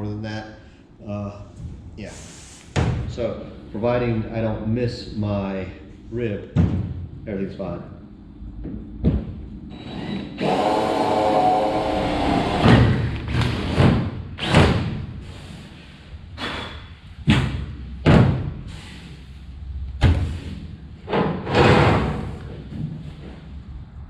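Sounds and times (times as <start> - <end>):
power drill drilling metal: 9.7 - 12.7.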